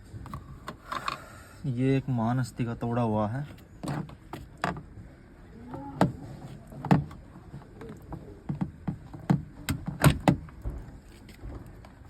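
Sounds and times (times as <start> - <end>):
tools clicking on car door parts: 3.5 - 4.9, 5.8 - 7.2, 7.9 - 11.7.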